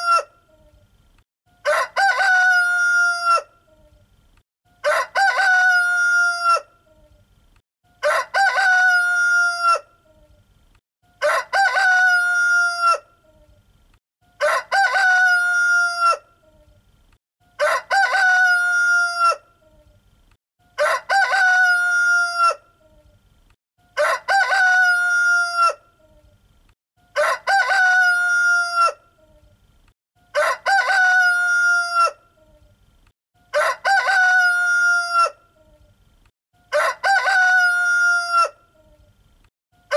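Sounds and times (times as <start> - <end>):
rooster crowing: 1.6 - 3.5, 4.8 - 6.7, 8.0 - 9.9, 11.2 - 13.1, 14.4 - 16.2, 17.6 - 19.4, 20.8 - 22.6, 23.9 - 25.8, 27.2 - 29.0, 30.3 - 32.2, 33.5 - 35.4, 36.7 - 38.6.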